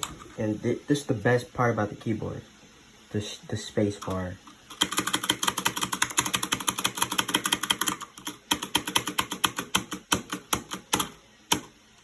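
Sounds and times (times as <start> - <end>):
quiet keyboard keystrokes: 4.0 - 11.7.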